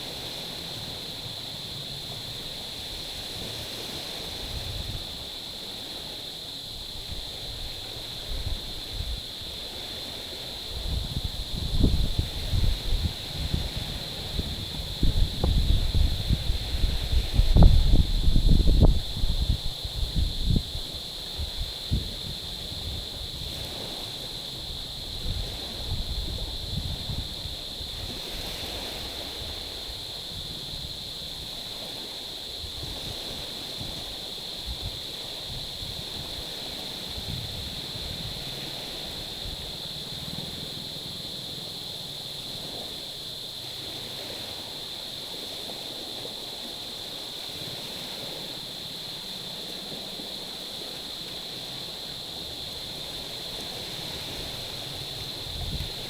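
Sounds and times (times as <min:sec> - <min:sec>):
steady high-pitched hiss: 0:00.0 - 0:56.0
wind buffeting microphone: 0:10.7 - 0:23.7
waves washing on stony shore: 0:20.8 - 0:56.0.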